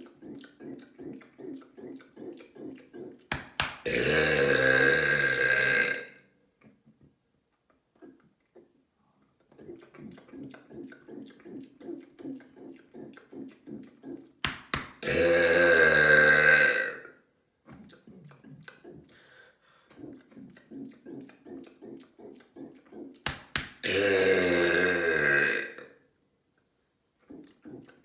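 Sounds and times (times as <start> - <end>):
man burping loudly: 3.8 - 6.2, 15.0 - 17.2, 23.8 - 26.0.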